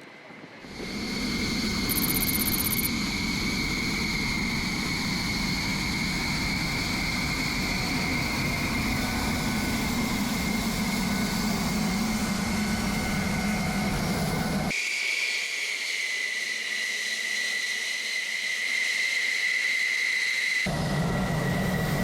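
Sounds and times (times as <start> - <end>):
jet engine idling: 0.6 - 14.7, 20.0 - 22.0.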